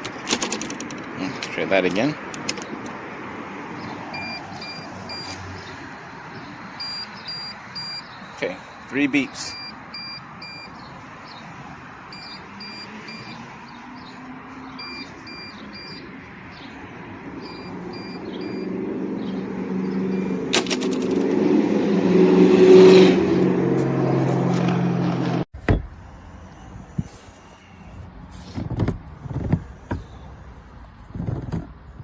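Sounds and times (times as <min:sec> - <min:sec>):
knocks and clatter: 0:20.5 - 0:21.4.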